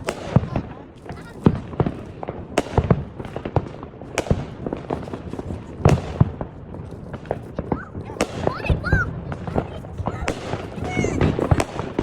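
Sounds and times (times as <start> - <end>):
fireworks bangs and crackles: 0.0 - 12.0
loud fireworks cracks: 0.0 - 12.0.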